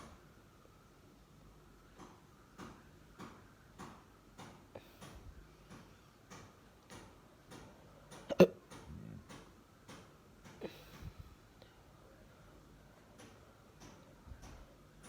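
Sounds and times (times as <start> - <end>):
loud hiccup: 8.3 - 8.6.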